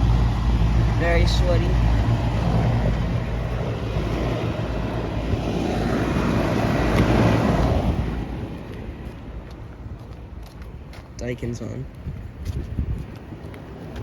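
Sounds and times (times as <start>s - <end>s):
compressor hum: 0.0s - 8.5s.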